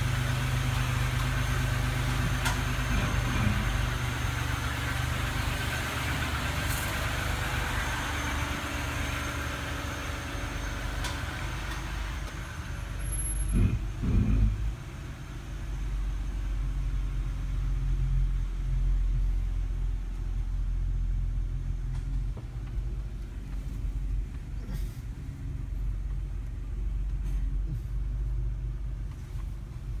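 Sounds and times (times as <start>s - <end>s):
minivan engine rumble: 0.0s - 30.0s
short low groans: 2.2s - 4.4s, 13.2s - 15.0s.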